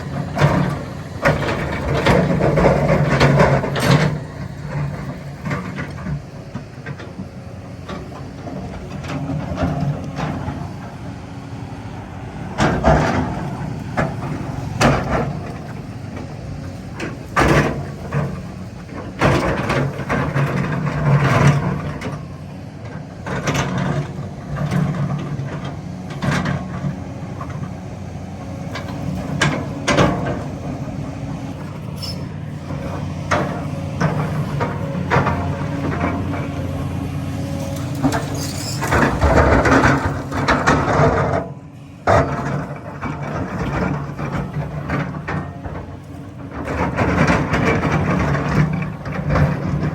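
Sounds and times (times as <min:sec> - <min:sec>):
excavator diesel engine running: 0:00.0 - 0:49.9.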